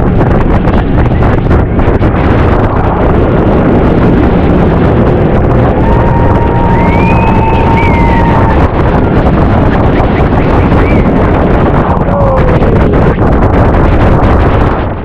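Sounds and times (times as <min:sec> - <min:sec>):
motorboat engine at speed: 0:00.0 - 0:15.0
wind buffeting microphone: 0:00.0 - 0:15.0
rising and falling whistle: 0:05.8 - 0:08.6.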